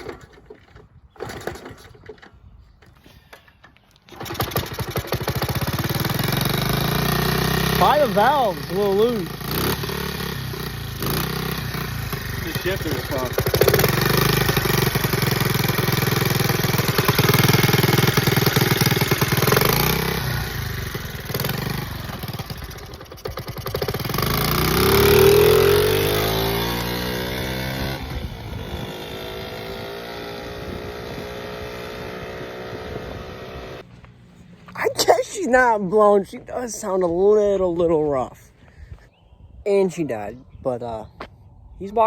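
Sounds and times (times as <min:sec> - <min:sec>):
minibike engine revving: 0:04.1 - 0:33.8.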